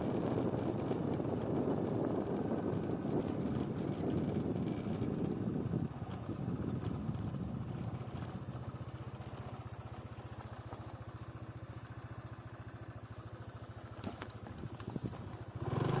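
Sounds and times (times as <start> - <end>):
small engine running: 0.0 - 16.0.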